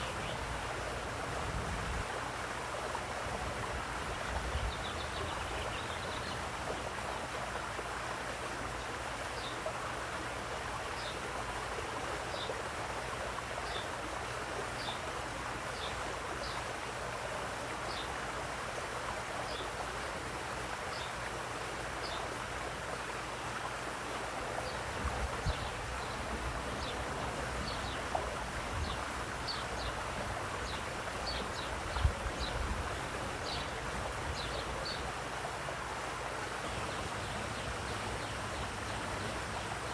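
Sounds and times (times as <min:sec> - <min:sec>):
running water splashing: 0:00.0 - 0:39.9.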